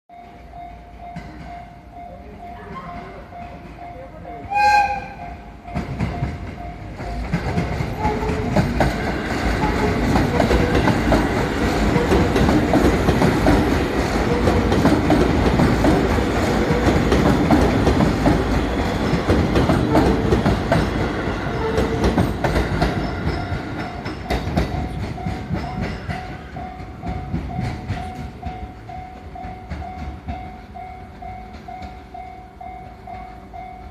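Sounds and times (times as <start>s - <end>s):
level crossing warning bell: 0.1s - 33.9s
train wheel and rail clatter: 0.1s - 33.9s
train horn blast: 4.4s - 5.4s, 7.9s - 8.6s.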